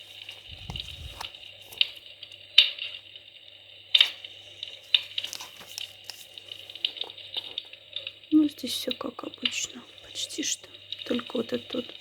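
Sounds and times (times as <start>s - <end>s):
fire crackling and popping: 0.0s - 8.3s.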